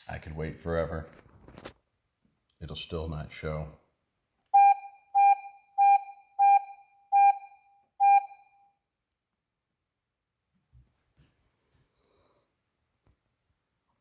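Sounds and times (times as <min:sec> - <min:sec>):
alarm panel beeping: 0:04.6 - 0:08.6.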